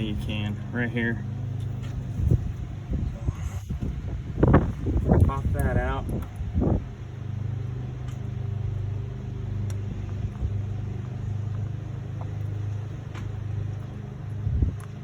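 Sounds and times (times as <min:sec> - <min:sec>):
steady low hum: 0:00.0 - 0:15.0
clicks and knocks of engine parts: 0:03.8 - 0:15.0.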